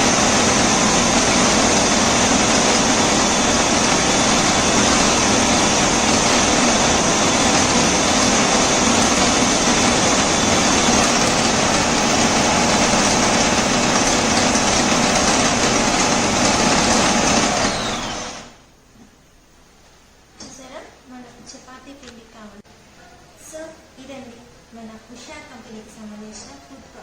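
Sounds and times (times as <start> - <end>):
food processor motor running: 0.0 - 18.6.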